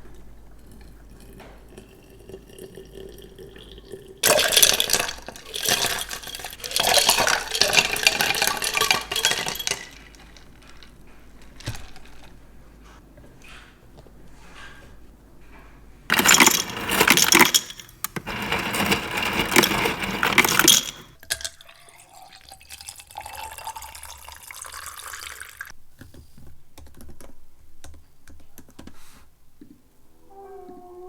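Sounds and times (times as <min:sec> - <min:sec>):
water gushing into container: 0:01.2 - 0:10.1, 0:18.3 - 0:25.7.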